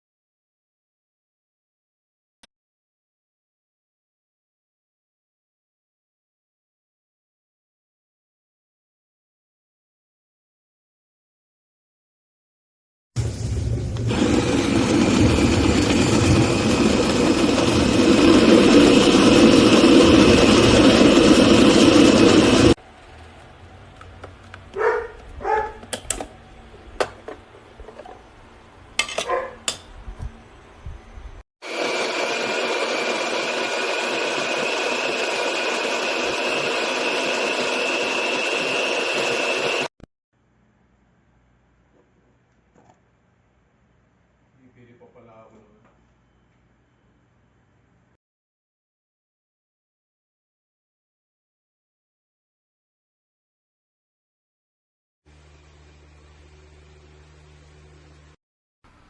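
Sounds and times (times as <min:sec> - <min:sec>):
coffee grinder motor whirring: 0:14.1 - 0:22.8, 0:31.6 - 0:39.9.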